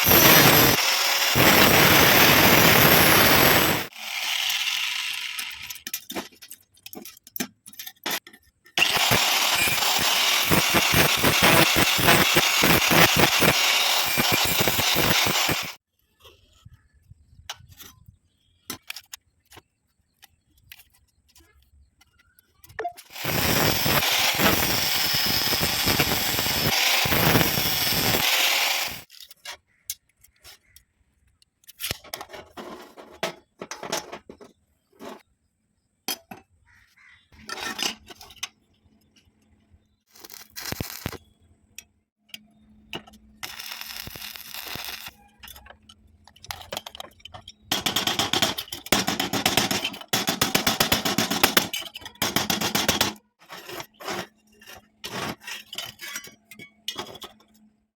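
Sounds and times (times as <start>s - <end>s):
metal parts clinking and scraping: 5.1s - 15.8s, 37.4s - 39.3s, 42.9s - 57.8s.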